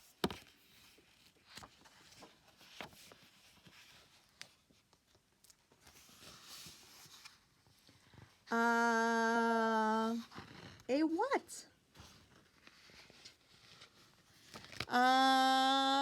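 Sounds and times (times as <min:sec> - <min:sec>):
paper pages rustling: 0:00.0 - 0:08.4, 0:11.9 - 0:15.0.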